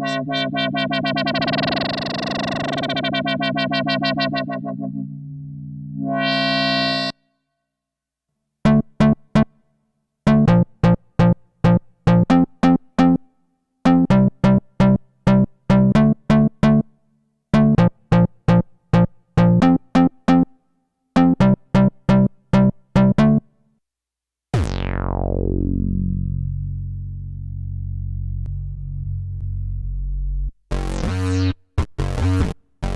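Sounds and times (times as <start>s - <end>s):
staccato synthesizer notes: 0.0s - 4.9s
held synth note with filter sweep: 0.0s - 7.3s, 24.6s - 29.5s.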